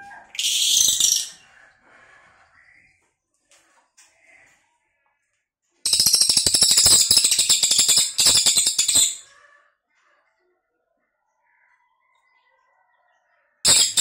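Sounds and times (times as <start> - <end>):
bird rattling song: 0.3 - 1.4, 5.9 - 9.3, 13.7 - 14.0.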